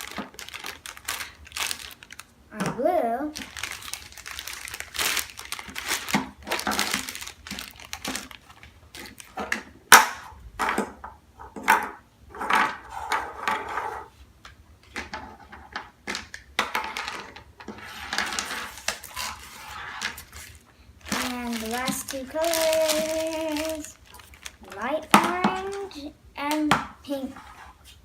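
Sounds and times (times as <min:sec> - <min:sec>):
plastic wrapping rustling: 0:00.0 - 0:10.3, 0:16.8 - 0:26.6.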